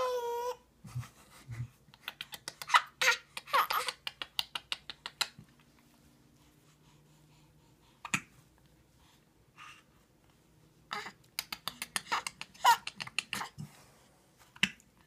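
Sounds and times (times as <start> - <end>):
high baby vocal sounds: 0.0 - 0.6, 2.1 - 4.8, 10.9 - 13.7
smacking kisses: 1.9 - 5.7, 11.2 - 13.6.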